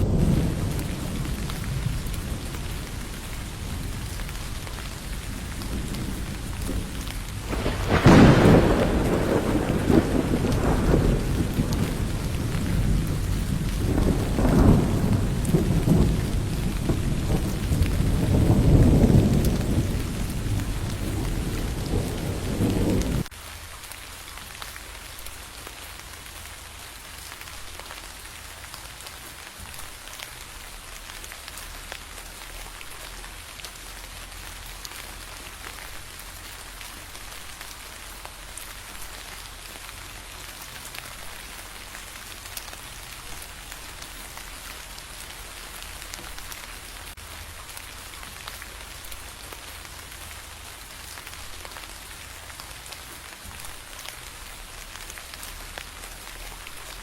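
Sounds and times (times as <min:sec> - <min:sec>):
rolling thunder: 0:00.0 - 0:23.3
rain pattering on a surface: 0:00.0 - 0:57.0.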